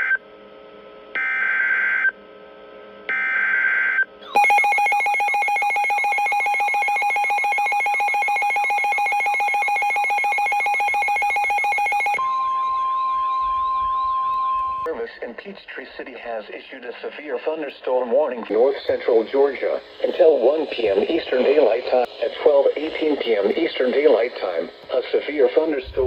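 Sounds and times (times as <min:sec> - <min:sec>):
steady warning alarm tone: 0:03.1 - 0:14.9.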